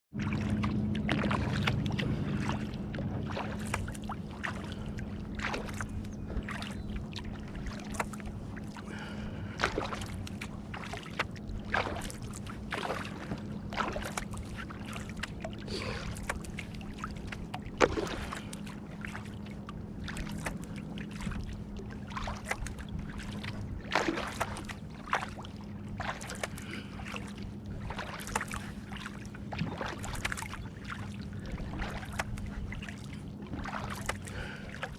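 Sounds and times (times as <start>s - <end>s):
kayak paddle splashing: 0.2s - 34.9s
water trickling off blades: 0.2s - 34.9s.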